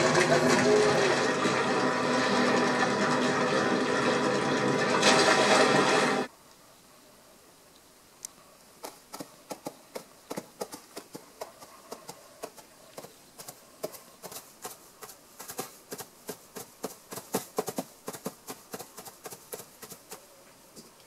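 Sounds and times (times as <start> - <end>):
hoofbeats knocking: 8.8 - 20.2.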